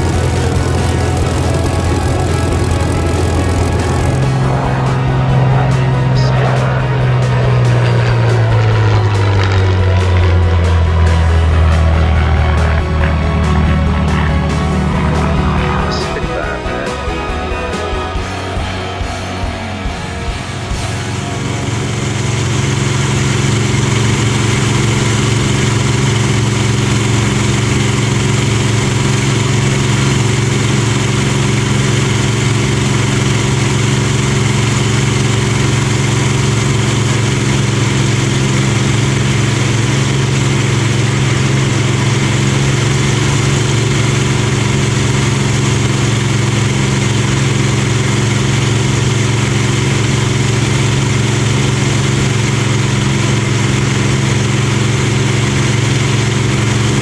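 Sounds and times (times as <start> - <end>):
aircraft engine droning: 0.0 - 57.0.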